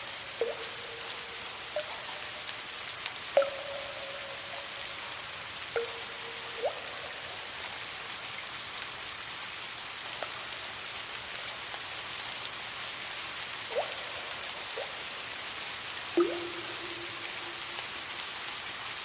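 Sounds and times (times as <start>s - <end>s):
water drops plinking into water: 0.0s - 7.8s, 13.7s - 15.3s, 16.1s - 18.1s
soft rain hiss: 0.0s - 19.0s.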